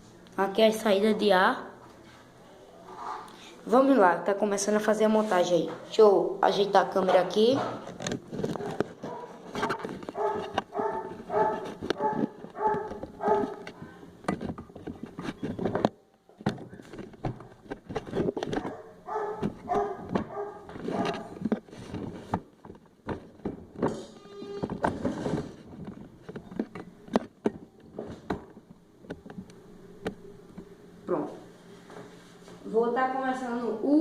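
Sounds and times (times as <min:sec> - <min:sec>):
clicks and knocks of handling: 0:07.1 - 0:18.8, 0:19.4 - 0:30.7
dog barking: 0:10.2 - 0:13.6, 0:18.6 - 0:21.3.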